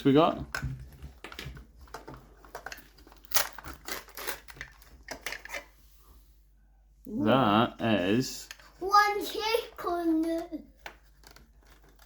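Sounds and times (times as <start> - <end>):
plastic packaging crinkling: 1.2 - 5.7, 11.0 - 12.0.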